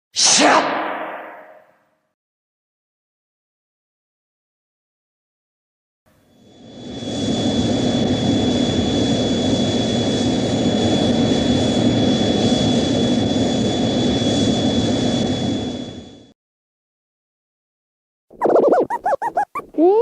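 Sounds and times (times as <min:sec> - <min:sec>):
jet-like roar with high whistle: 0:06.2 - 0:16.3.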